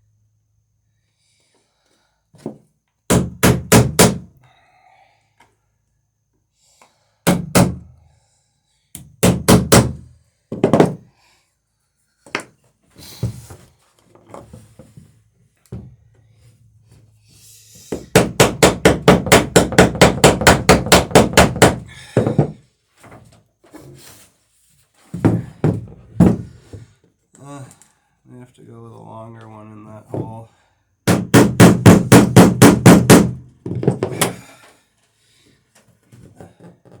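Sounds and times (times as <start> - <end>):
hammer striking wood: 2.4 - 4.3, 7.3 - 7.9, 9.2 - 11.0, 17.9 - 22.6, 31.1 - 34.4.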